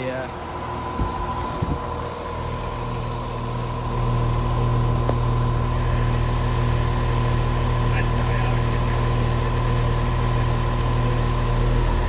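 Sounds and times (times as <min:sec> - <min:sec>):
condenser fan noise: 0:00.0 - 0:12.0
heat pump compressor hum: 0:00.0 - 0:12.0.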